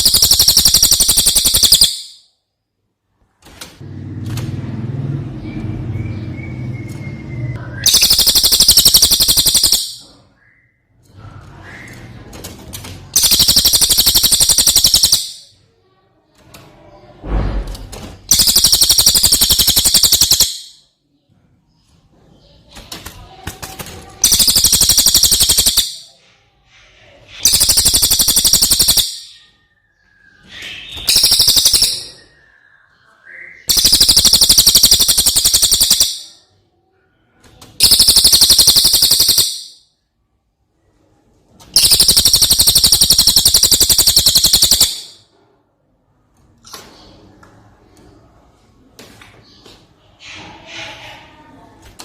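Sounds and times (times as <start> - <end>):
songbird rapid rattling song: 0.0 - 2.2, 5.5 - 10.1, 13.1 - 15.5, 18.2 - 20.9, 22.8 - 26.1, 27.4 - 36.4, 37.8 - 39.8, 41.7 - 45.2.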